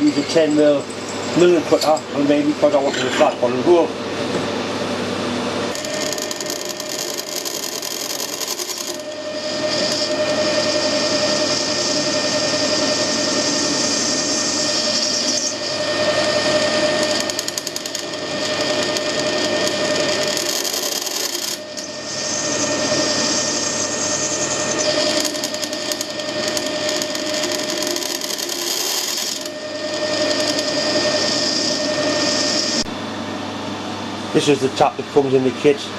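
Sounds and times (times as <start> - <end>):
metal lathe running: 0.0 - 3.9, 5.6 - 32.9
milling cutter cutting steel: 5.7 - 32.9.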